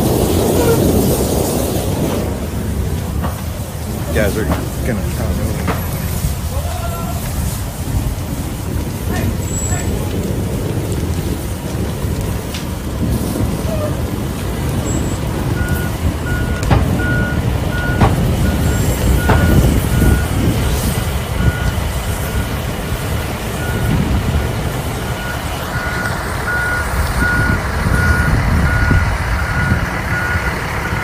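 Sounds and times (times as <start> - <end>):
low engine rumble: 0.0 - 31.0
reversing alarm beeps: 14.9 - 20.4, 25.0 - 29.0.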